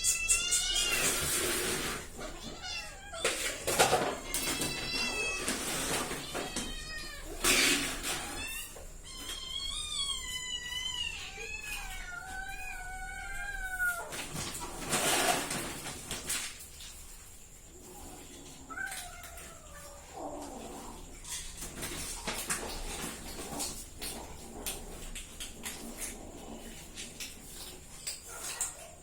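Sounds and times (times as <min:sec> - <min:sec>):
cat meowing: 0:00.0 - 0:01.2, 0:02.3 - 0:07.5, 0:08.2 - 0:14.1, 0:18.7 - 0:20.2.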